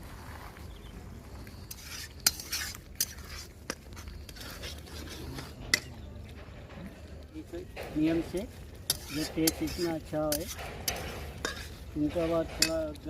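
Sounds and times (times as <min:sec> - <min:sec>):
spoon scraping a cooking pan: 0:01.5 - 0:06.0, 0:08.2 - 0:13.0.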